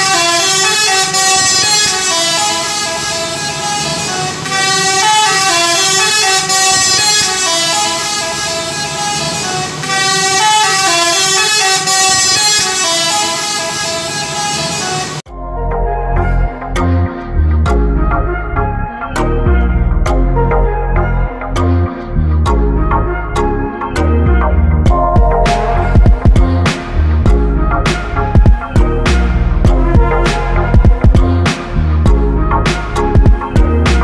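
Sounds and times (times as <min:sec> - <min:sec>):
bus multi-tone air horn tune: 0:00.0 - 0:15.3, 0:16.2 - 0:33.9.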